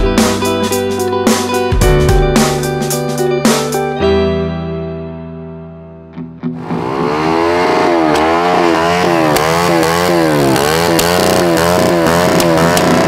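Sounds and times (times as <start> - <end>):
dirt bike engines revving: 6.6 - 13.0.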